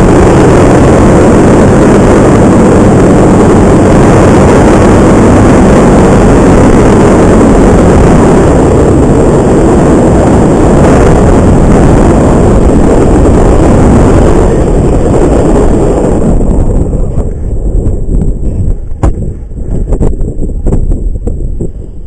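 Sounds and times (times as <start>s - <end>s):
paramotor engine and propeller: 0.0s - 22.0s
wind rush on microphone: 0.0s - 22.0s.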